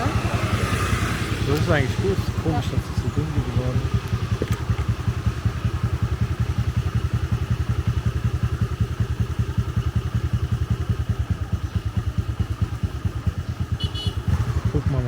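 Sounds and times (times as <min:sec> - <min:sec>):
motorbike engine running: 0:00.0 - 0:15.0.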